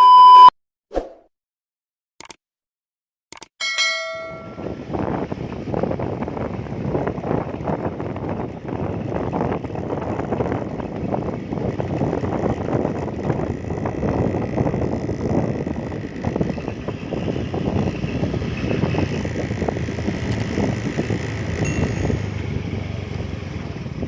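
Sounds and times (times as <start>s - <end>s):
moving vehicle noise: 3.6s - 24.0s
wind buffeting microphone: 4.4s - 24.0s.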